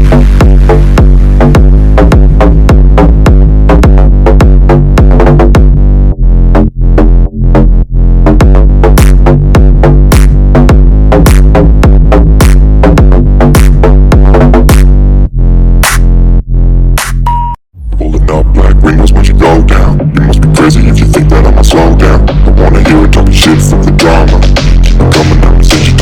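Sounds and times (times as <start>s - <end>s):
electronic hip-hop instrumental: 0.0s - 5.8s, 17.0s - 26.0s.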